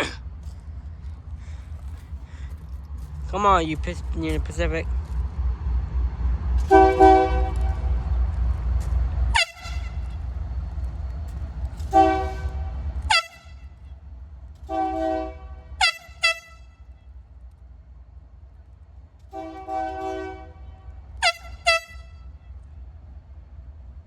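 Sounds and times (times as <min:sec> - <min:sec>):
low rumble: 0:00.0 - 0:15.9
locomotive air horn blasts: 0:06.6 - 0:08.0, 0:09.3 - 0:10.3, 0:11.8 - 0:14.0, 0:14.6 - 0:17.1, 0:19.3 - 0:22.7.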